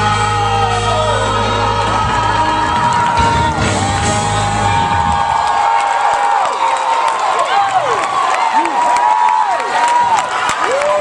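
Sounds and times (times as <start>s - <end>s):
gospel choir and band music: 0.0s - 6.3s
crowd whooping: 0.0s - 11.0s.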